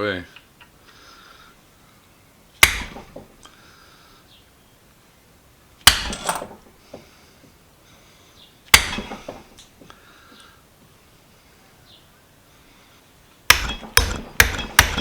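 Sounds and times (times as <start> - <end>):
hammer striking metal punch: 2.6 - 3.3, 5.8 - 6.6, 8.7 - 9.4, 13.5 - 15.0
short metallic rattle: 5.9 - 6.7, 8.8 - 9.6.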